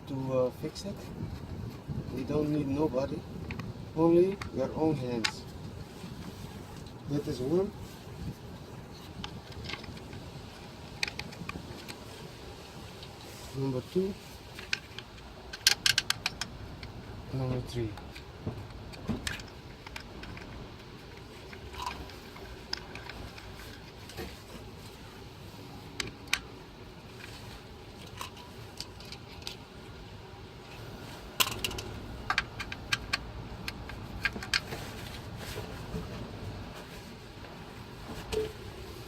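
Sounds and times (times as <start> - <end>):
hand tools and metal parts clinking: 31.4 - 35.2.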